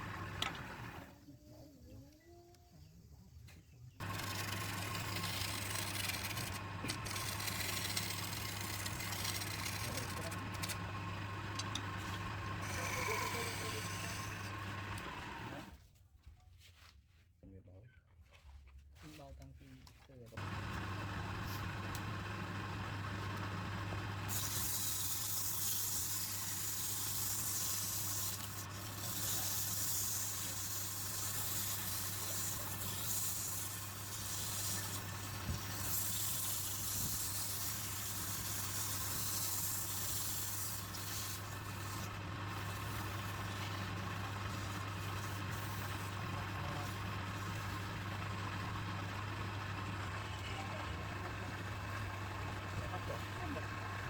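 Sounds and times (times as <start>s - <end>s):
wood lathe motor hum: 0.0s - 1.1s, 4.0s - 15.7s, 20.4s - 54.0s
tool scraping spinning wood: 4.0s - 15.7s, 20.4s - 54.0s.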